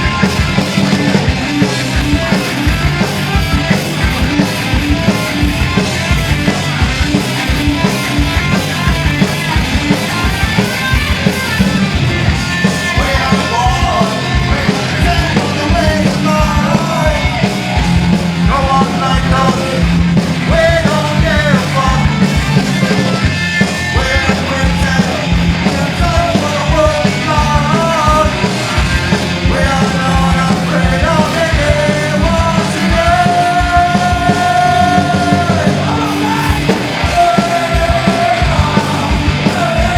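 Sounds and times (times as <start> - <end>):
punk rock band playing: 0.0 - 39.9
shouted vocals: 8.0 - 39.9.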